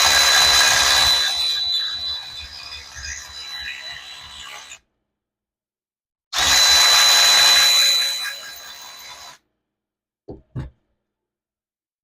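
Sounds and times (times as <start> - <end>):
power drill whirring: 0.0 - 4.8, 6.4 - 9.4.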